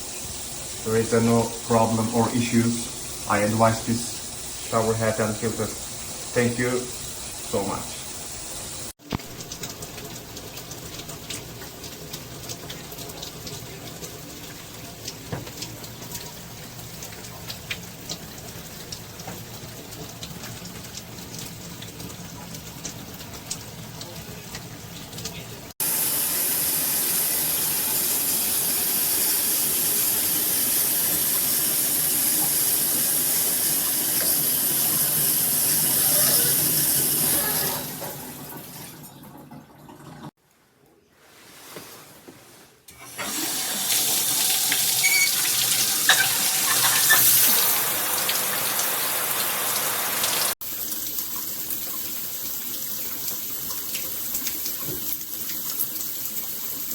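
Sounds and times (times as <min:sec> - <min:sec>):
shower head spraying water: 0:25.8 - 0:38.3, 0:42.9 - 0:50.6.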